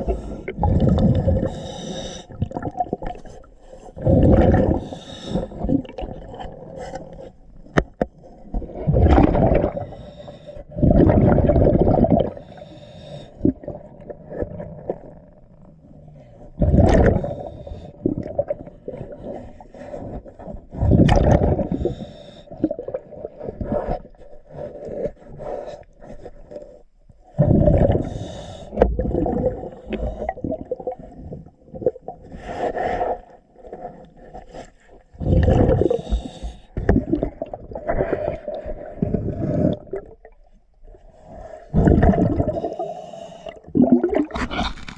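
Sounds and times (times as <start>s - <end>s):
exhaled bubbles rushing: 0.0s - 1.6s, 4.0s - 4.9s, 8.6s - 10.0s, 10.7s - 12.4s, 16.6s - 18.7s, 20.8s - 21.9s, 27.4s - 28.2s, 28.8s - 32.1s, 35.2s - 36.1s, 36.9s - 40.4s, 41.7s - 42.9s, 43.6s - 44.9s
diver breathing through regulator: 0.0s - 2.4s, 3.6s - 5.9s, 9.6s - 10.8s, 12.3s - 13.8s, 21.6s - 22.8s, 27.4s - 31.4s, 34.3s - 40.1s, 41.0s - 44.9s.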